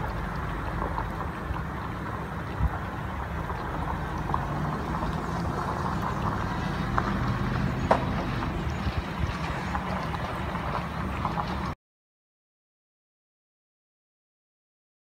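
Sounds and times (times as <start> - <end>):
vehicle engine idling: 0.0 - 11.8.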